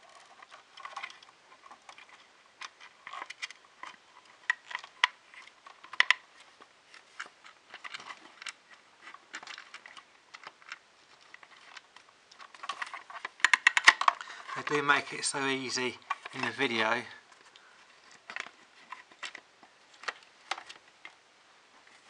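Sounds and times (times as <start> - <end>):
small hard parts clicking: 0.0 - 21.2.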